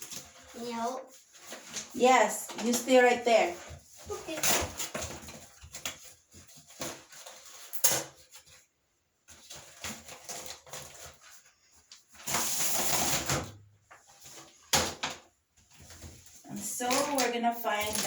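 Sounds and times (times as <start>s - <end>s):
rustling noise: 0.0s - 8.7s.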